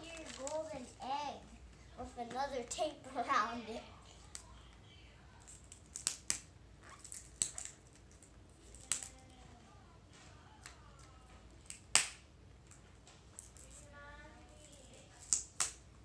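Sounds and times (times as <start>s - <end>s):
packaging tape snapping and tearing: 5.5s - 9.2s, 11.6s - 12.2s, 15.1s - 15.9s.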